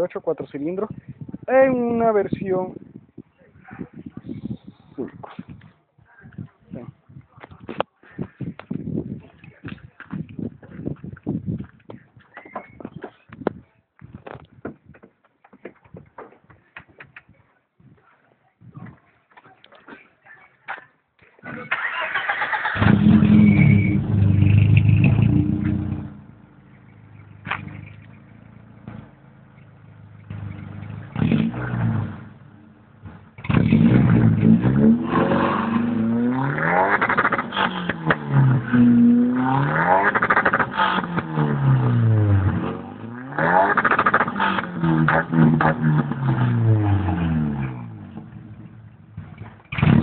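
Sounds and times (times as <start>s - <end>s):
car engine idling and revving: 22.5s - 50.0s.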